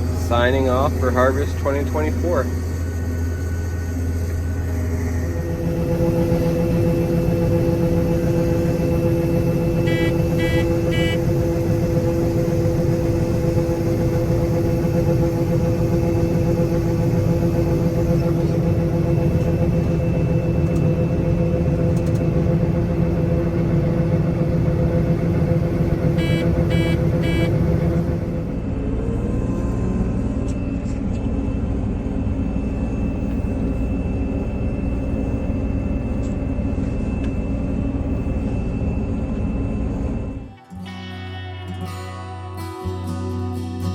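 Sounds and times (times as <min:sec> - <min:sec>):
diesel farm machine running: 0:00.0 - 0:42.0
short beeps: 0:09.8 - 0:11.2, 0:26.2 - 0:27.6.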